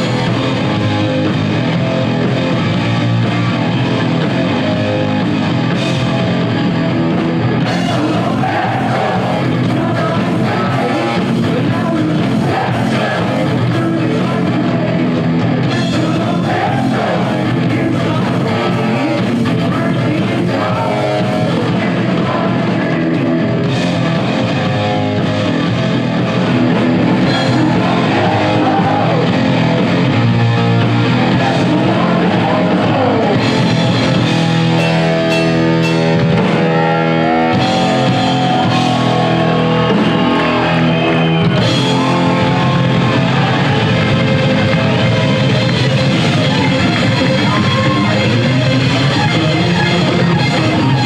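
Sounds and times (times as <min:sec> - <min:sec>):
heavy metal band playing: 0:00.0 - 0:51.0
person singing: 0:07.6 - 0:23.4, 0:27.1 - 0:29.8, 0:31.1 - 0:35.6.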